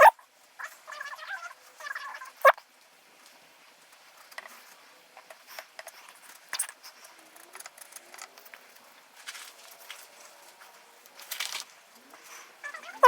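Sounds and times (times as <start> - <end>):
high-pitched animal calls: 0.0 - 2.6, 12.6 - 13.0.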